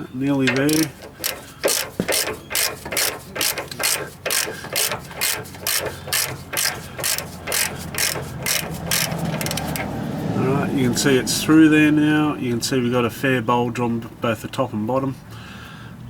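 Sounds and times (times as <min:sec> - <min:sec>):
ratchet wrench clicking: 0:00.4 - 0:09.9.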